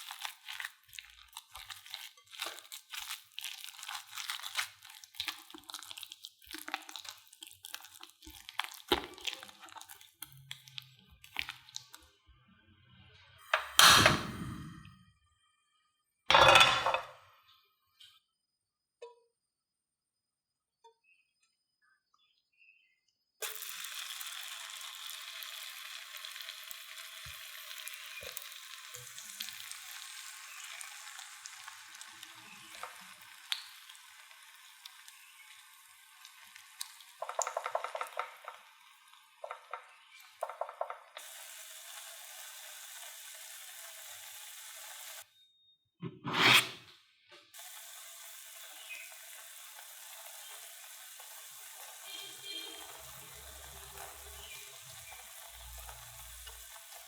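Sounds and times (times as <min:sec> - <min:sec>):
oil sizzling in a frying pan: 0:00.0 - 0:12.0, 0:16.3 - 0:17.0, 0:23.4 - 0:45.3, 0:47.5 - 0:57.0
short scraping sounds: 0:13.5 - 0:15.0, 0:46.0 - 0:46.9
loud clunk: 0:13.6 - 0:14.9.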